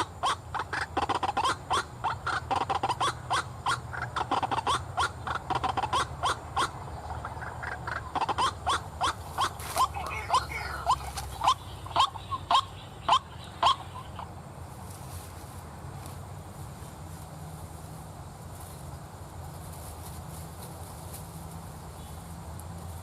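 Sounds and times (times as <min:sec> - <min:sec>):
waterhen harsh calls: 0:00.0 - 0:14.4
steady low hum: 0:00.0 - 0:23.0.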